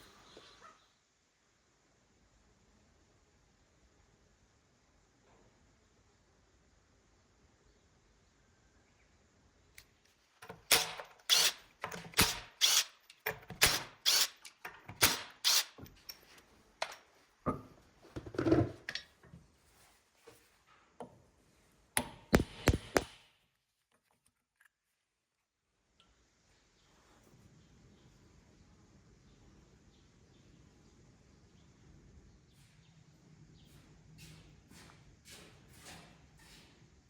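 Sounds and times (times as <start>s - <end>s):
sharp knocks and clacks: 22.0s - 23.2s.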